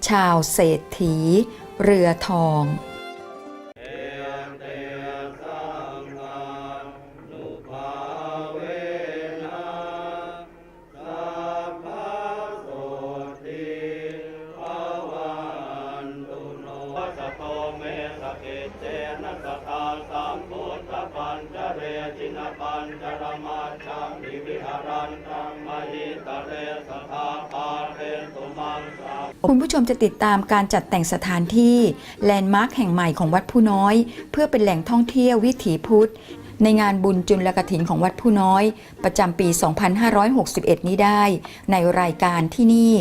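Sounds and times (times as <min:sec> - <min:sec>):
monks chanting: 0:03.8 - 0:29.4.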